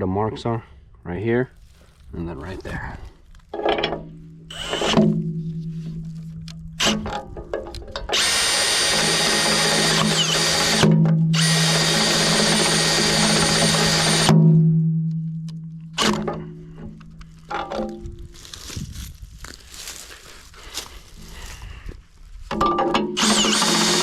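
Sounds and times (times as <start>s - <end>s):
cordless drill boring into steel: 4.5s - 5.0s, 8.1s - 14.4s, 23.2s - 24.0s.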